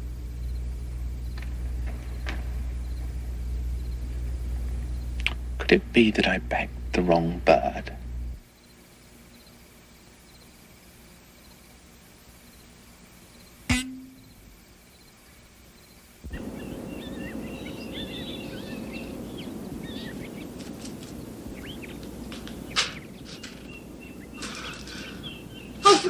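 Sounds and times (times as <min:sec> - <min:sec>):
small birds chirping: 0:00.0 - 0:26.0
sharp knock with low ring: 0:13.7 - 0:14.4.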